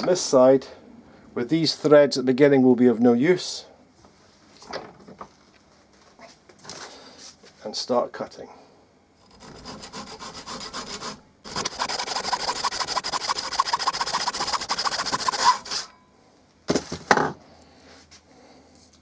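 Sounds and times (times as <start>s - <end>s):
hacksaw cutting metal: 9.3s - 15.9s.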